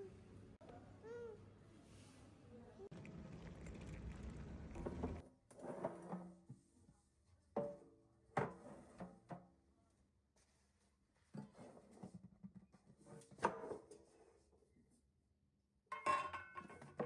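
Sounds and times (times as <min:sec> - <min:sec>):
rustling rumble: 0:02.9 - 0:05.2.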